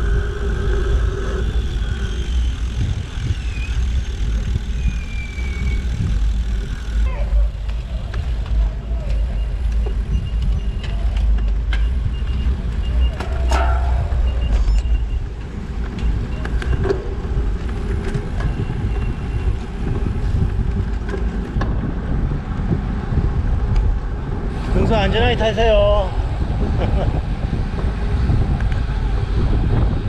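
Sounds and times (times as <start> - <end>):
wind rumble on camera microphone: 0.0 - 30.0.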